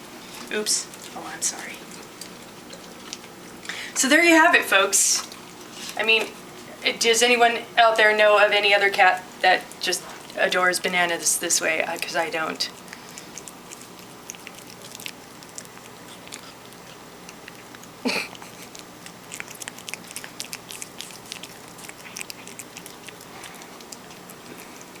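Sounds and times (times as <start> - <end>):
cat chewing wetly: 0.0 - 4.0, 5.1 - 6.8, 9.2 - 25.0.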